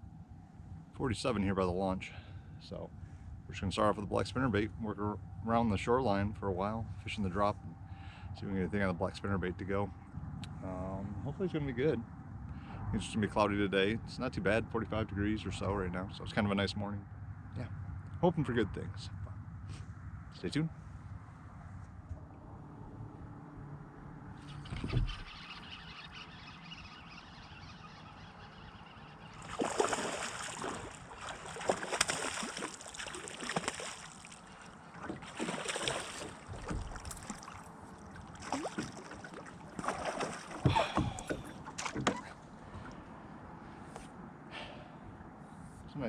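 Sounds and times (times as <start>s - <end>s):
dull thump: 24.6s - 25.4s, 40.5s - 42.3s
fish splashing at water surface: 27.2s - 42.1s.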